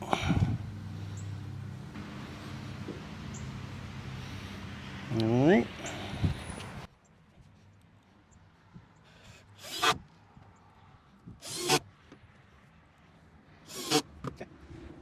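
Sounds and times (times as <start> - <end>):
wood scraping against wood: 9.2 - 10.0, 11.4 - 11.8, 13.7 - 14.0.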